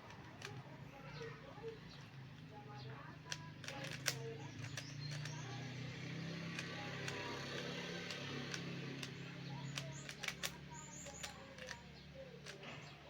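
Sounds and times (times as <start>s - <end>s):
puzzle cube layers clicking: 3.6s - 5.4s, 6.5s - 11.8s.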